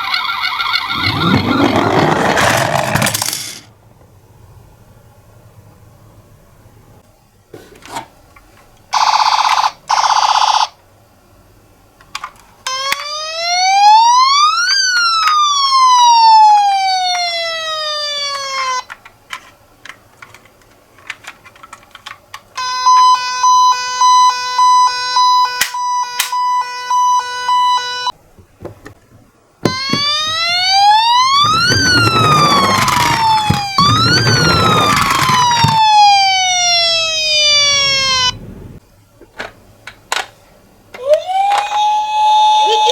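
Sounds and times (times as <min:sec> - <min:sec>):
loud rattling noise: 0:00.9 - 0:03.6, 0:29.7 - 0:36.1
toy siren wailing and beeping: 0:29.7 - 0:38.4.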